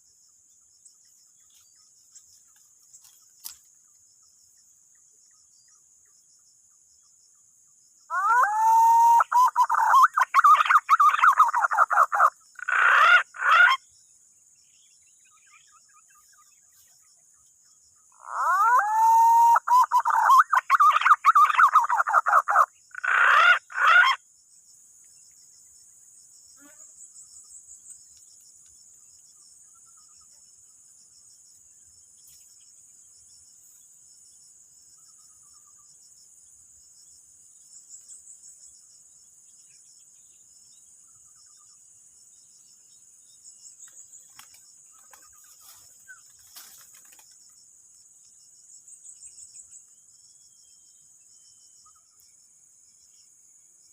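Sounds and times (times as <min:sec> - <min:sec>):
insect chirring: 0:00.0 - 0:53.9
pigeon warbling whistled calls: 0:08.1 - 0:13.6, 0:18.2 - 0:24.2.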